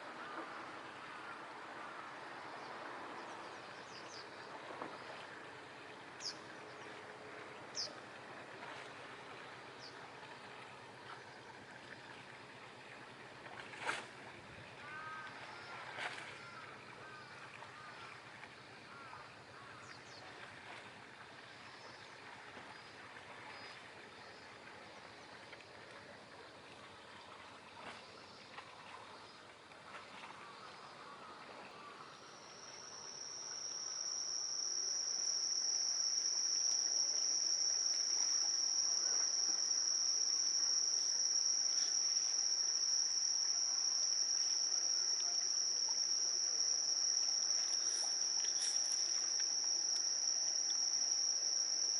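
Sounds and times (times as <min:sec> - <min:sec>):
faint water washing: 0:00.0 - 0:51.9
insect high-pitched song: 0:32.1 - 0:51.9.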